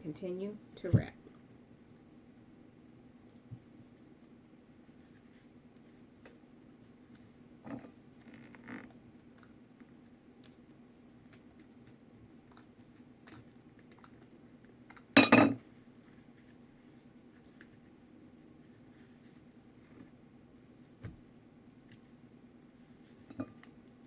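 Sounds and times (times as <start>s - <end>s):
faint taps and rustles: 20.9s - 22.2s.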